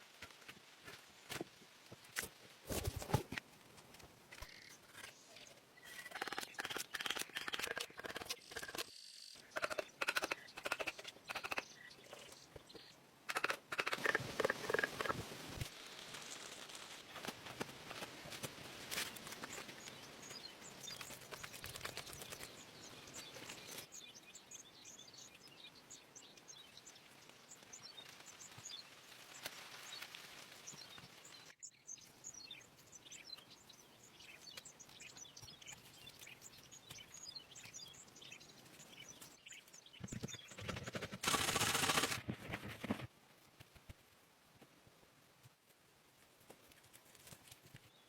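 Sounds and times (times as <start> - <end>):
loud rustling or scraping: 40.6 - 43.1.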